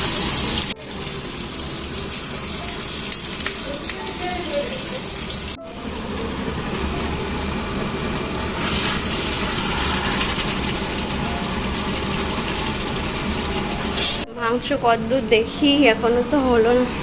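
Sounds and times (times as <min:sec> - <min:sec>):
low mechanical hum: 0:05.0 - 0:17.0
hiss: 0:08.5 - 0:10.9, 0:13.8 - 0:14.3.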